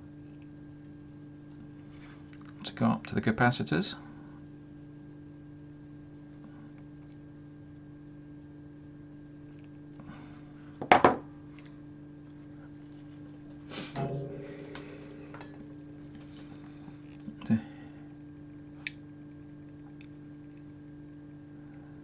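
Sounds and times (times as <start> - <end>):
electrical hum: 0.0 - 22.0
tools knocking on workbench: 10.8 - 11.2.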